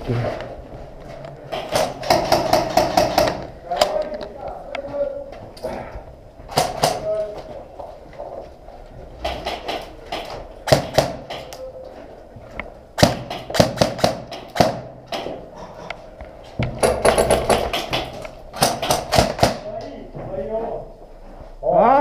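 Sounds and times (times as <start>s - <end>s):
airsoft guns firing: 1.5s - 3.5s, 6.5s - 7.1s, 9.2s - 11.5s, 13.0s - 15.2s, 16.8s - 19.7s.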